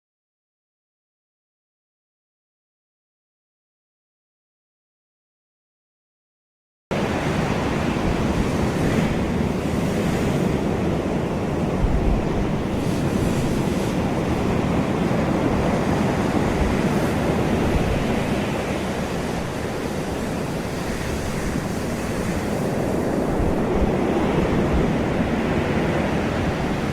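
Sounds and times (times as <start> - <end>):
ocean waves breaking on shore: 6.9 - 26.9
wind rumble on microphone: 6.9 - 26.9.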